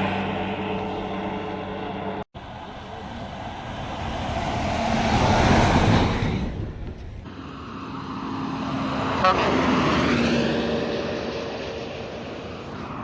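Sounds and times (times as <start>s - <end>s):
bus passing by: 0.0s - 13.0s
bus horn toot: 9.2s - 9.7s.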